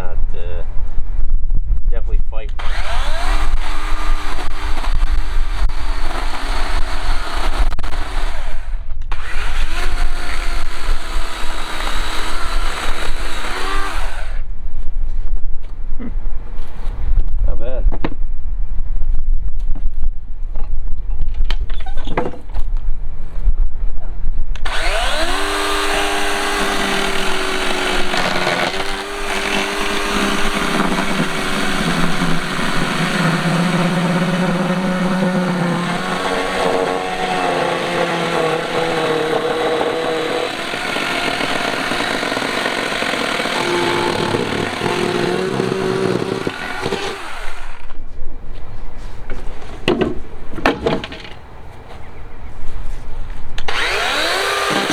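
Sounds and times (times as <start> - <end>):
chainsaw cutting log: 2.5 - 14.5, 24.6 - 48.0, 53.6 - 54.9.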